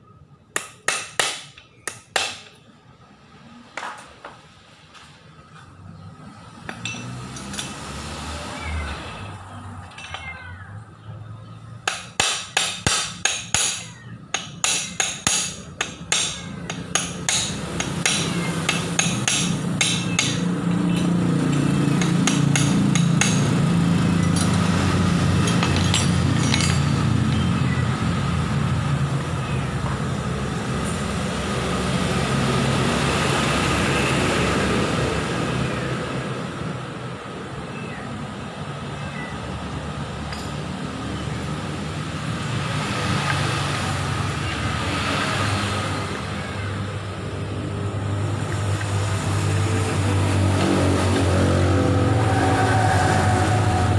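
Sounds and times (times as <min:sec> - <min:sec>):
sharp metal strikes: 0:11.8 - 0:24.8.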